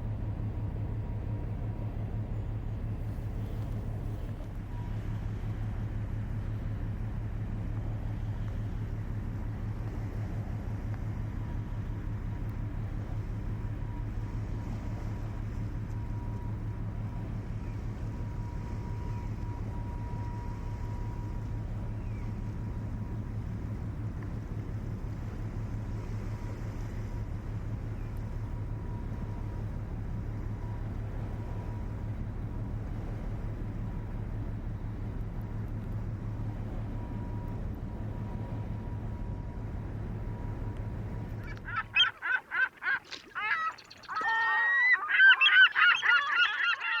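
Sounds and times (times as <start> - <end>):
boat diesel engine humming: 0.0 - 47.0
low steady rumble: 0.0 - 47.0
faint thin whine: 11.2 - 41.7
geese honking: 41.4 - 47.0.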